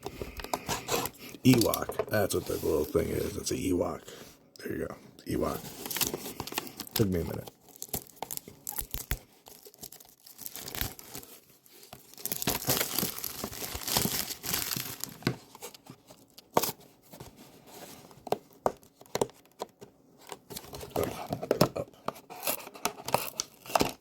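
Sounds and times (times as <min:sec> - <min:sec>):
packaging tearing and crinkling: 0:05.4 - 0:16.8, 0:22.2 - 0:24.0.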